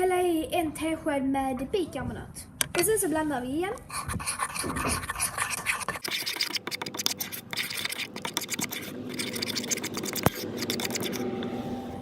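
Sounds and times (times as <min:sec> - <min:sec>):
utensil scraping in bowl: 0:03.8 - 0:11.6.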